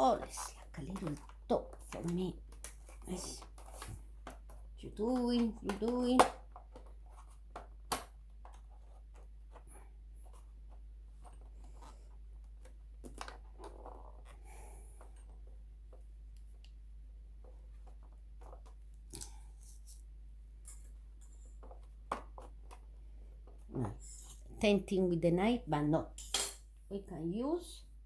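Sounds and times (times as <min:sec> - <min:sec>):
faint low hum: 0:00.0 - 0:28.0
plastic parts clicking and tapping: 0:00.1 - 0:09.7.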